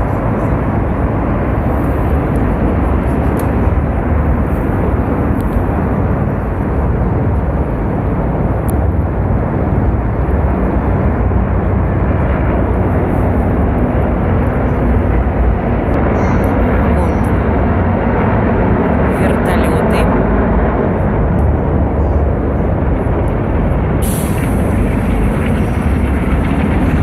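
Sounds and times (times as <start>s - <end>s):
military aircraft rumbling overhead: 0.0s - 27.0s.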